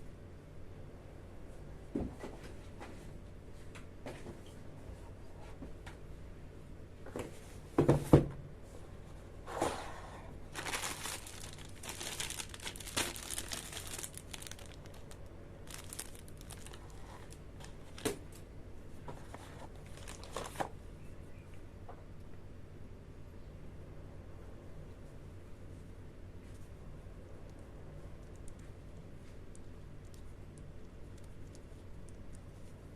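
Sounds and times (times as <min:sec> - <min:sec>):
plastic crinkling and rustling: 0:10.4 - 0:18.4, 0:19.2 - 0:20.7.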